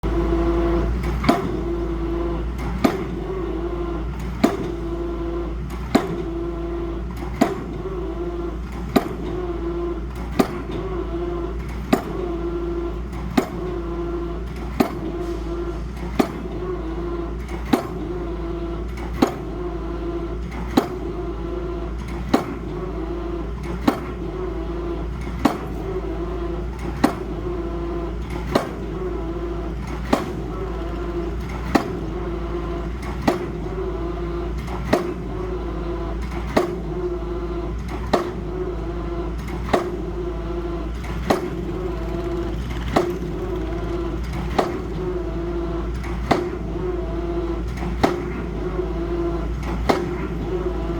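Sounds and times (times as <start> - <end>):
machine humming: 28.8 - 33.0, 40.3 - 47.0.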